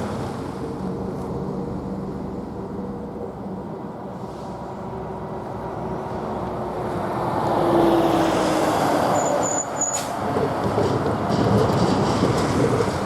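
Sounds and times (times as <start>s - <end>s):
train rumbling over crossing: 0.0s - 13.0s
brief high squeal: 9.2s - 10.2s.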